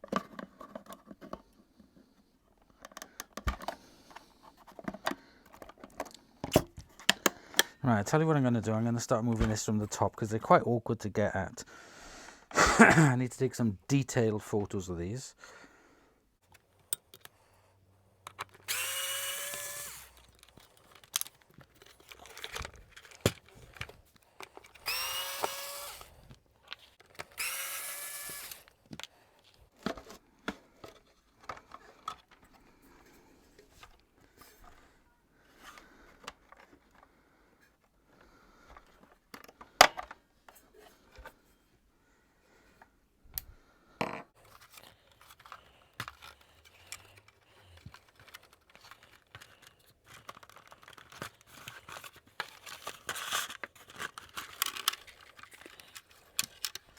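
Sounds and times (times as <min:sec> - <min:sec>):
plastic parts clicking and knocking: 0:00.0 - 0:01.6, 0:02.5 - 0:07.8, 0:16.4 - 0:17.4, 0:18.2 - 0:32.7, 0:35.6 - 0:41.4, 0:43.3 - 0:56.9
electric screwdriver whining: 0:18.6 - 0:20.4, 0:24.6 - 0:26.3, 0:27.2 - 0:28.8.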